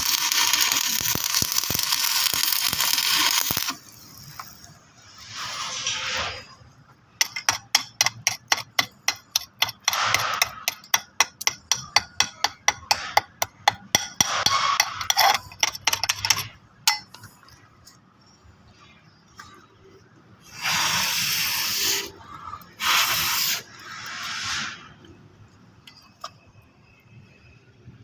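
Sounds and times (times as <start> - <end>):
hammer strikes on metal: 7.2 - 15.0
short hissing bursts: 20.4 - 25.0.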